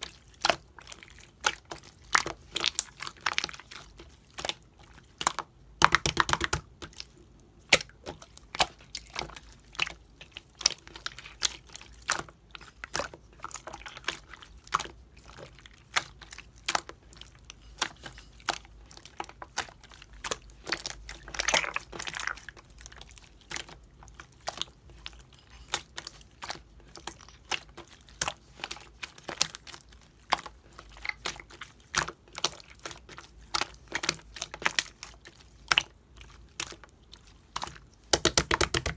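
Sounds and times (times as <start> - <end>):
slime with beads squished by hand: 17.7 - 38.9.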